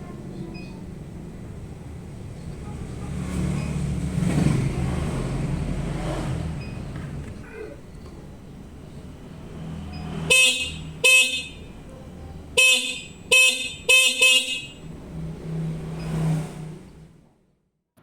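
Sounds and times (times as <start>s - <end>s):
bicycle horn beeping: 10.3s - 14.9s.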